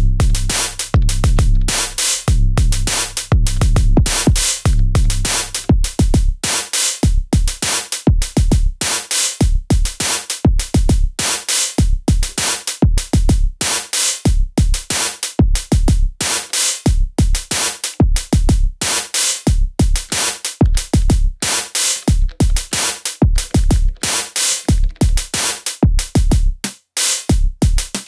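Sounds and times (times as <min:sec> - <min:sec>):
deep kick drums: 0:00.0 - 0:06.4, 0:07.0 - 0:08.8, 0:09.4 - 0:11.2, 0:11.8 - 0:13.6, 0:14.3 - 0:16.1, 0:16.9 - 0:18.8, 0:19.5 - 0:21.4, 0:22.0 - 0:24.1, 0:24.7 - 0:26.6
bright hi-hat hits: 0:00.0 - 0:28.0.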